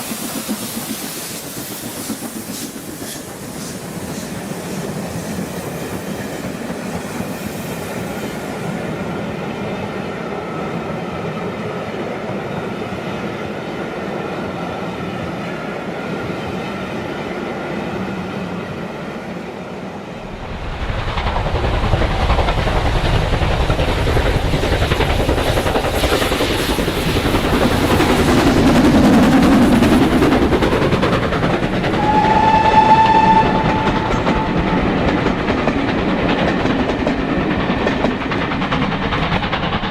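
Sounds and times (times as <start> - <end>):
model train humming on track: 0.0 - 39.9
wheels rumbling on rails: 20.2 - 39.9
train whistle: 31.8 - 35.1.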